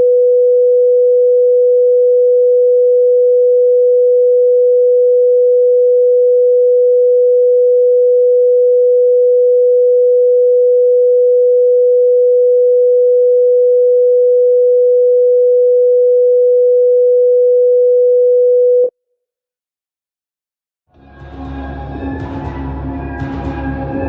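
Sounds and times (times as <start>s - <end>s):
heart monitor flatline beep: 0.0s - 2.2s, 10.4s - 18.9s.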